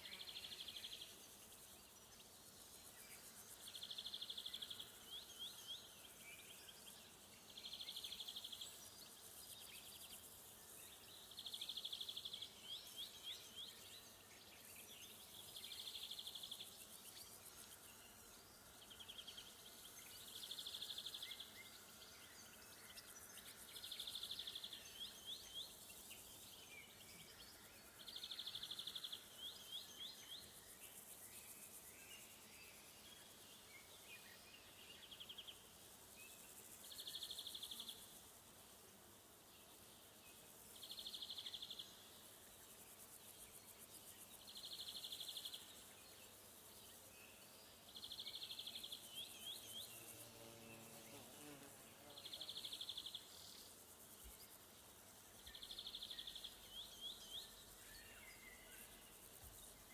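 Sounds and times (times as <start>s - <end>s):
high-pitched insect trill: 47.9s - 59.9s.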